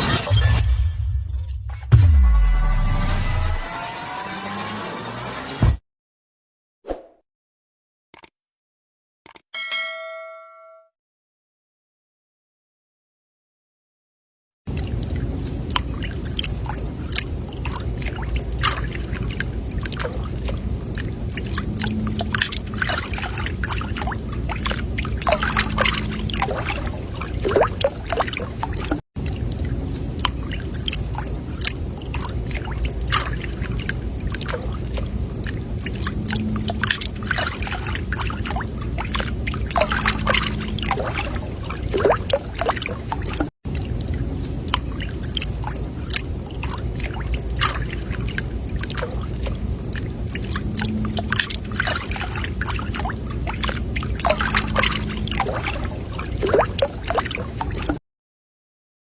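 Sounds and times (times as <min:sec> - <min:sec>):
low rumble of water: 0:14.7 - 0:58.0
water splashing from swimming: 0:14.7 - 0:58.0.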